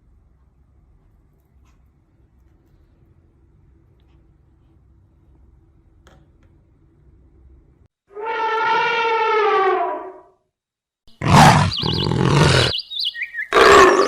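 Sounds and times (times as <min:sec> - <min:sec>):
rough noisy animal call: 0:08.1 - 0:10.3, 0:11.1 - 0:14.0
animal long pitched call: 0:08.1 - 0:10.4, 0:11.2 - 0:12.8, 0:13.5 - 0:14.0.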